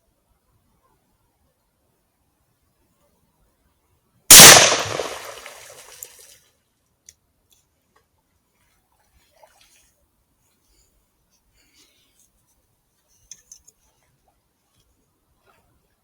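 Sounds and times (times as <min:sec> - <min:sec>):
gunshot with echo: 0:04.3 - 0:06.0.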